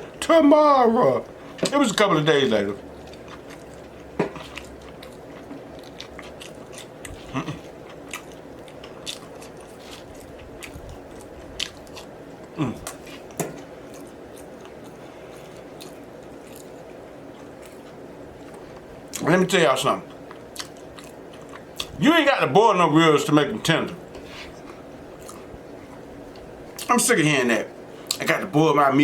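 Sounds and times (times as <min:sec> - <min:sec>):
person chewing food: 0:02.8 - 0:19.3, 0:20.0 - 0:22.0, 0:24.1 - 0:26.9, 0:28.0 - 0:28.3.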